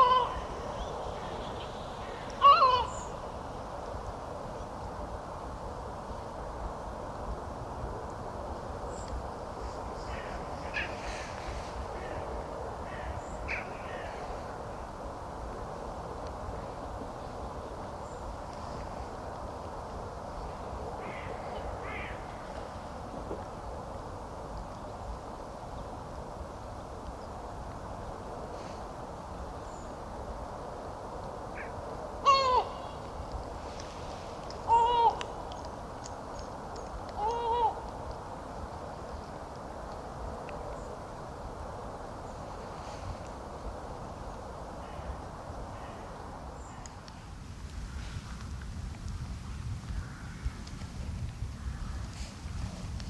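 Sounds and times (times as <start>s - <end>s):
crow cawing: 0.0s - 1.4s, 2.0s - 3.2s, 10.1s - 11.3s, 21.0s - 22.2s, 31.6s - 33.1s, 34.6s - 35.5s.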